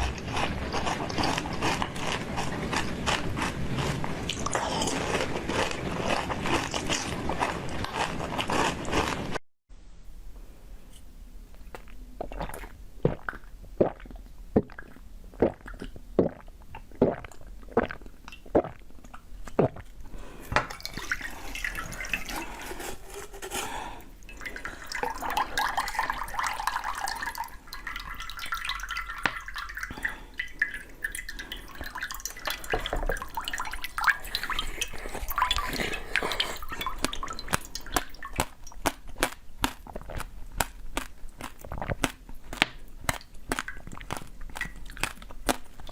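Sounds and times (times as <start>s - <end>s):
sharp eating crunches: 0.0s - 9.4s, 34.6s - 45.9s
wet chewing: 0.0s - 9.4s, 29.1s - 45.9s.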